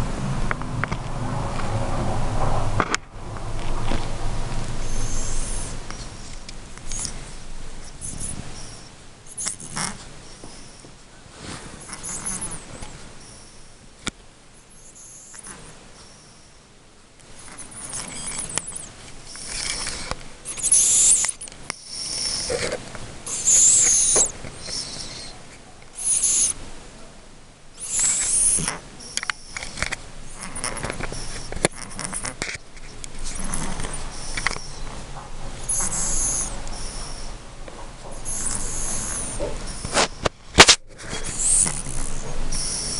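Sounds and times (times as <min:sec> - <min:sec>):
cat snoring: 0:04.6 - 0:13.7, 0:14.7 - 0:16.6, 0:17.4 - 0:25.4, 0:26.0 - 0:26.6, 0:27.8 - 0:32.6, 0:33.2 - 0:37.4, 0:38.1 - 0:42.9
sharp click: 0:39.8 - 0:40.8.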